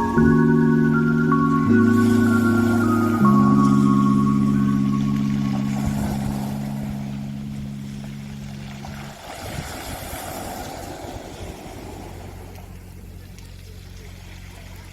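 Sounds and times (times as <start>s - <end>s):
low music tones: 0.0s - 9.4s
faint steady hum: 0.0s - 14.9s
wave washing over pebbles: 4.8s - 14.9s.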